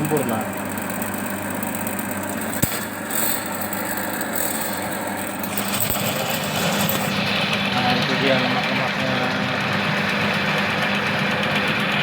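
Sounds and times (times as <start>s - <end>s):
drain-cleaning machine running: 0.0s - 12.0s
sharp click: 2.4s - 6.0s.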